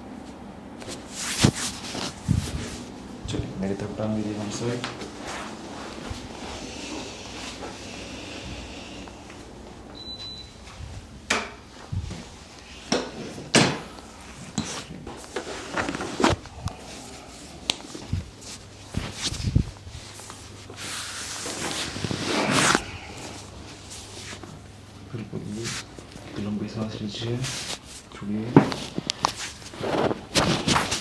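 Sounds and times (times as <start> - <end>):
rubbing and rustling: 0.8 - 3.1, 4.4 - 7.9, 14.2 - 26.6, 27.2 - 31.0.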